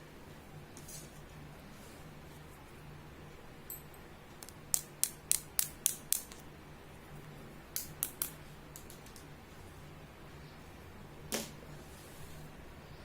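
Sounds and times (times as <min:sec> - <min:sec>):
sharp small clicks: 0:04.4 - 0:06.4.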